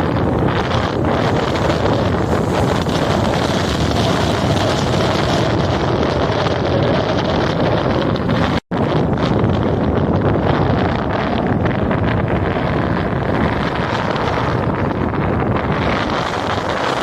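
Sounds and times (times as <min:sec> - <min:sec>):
sea surf rushing: 0:00.0 - 0:08.6, 0:13.0 - 0:17.0
wind buffeting microphone: 0:00.0 - 0:17.0.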